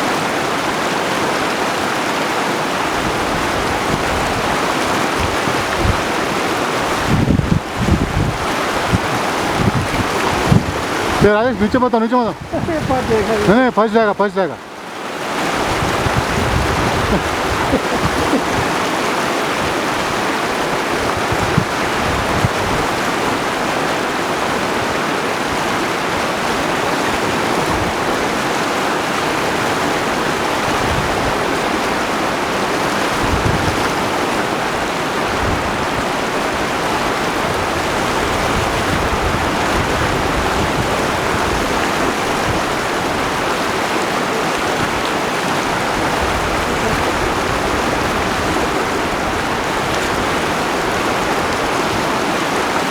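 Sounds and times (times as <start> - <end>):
river rushing: 0.0 - 52.9.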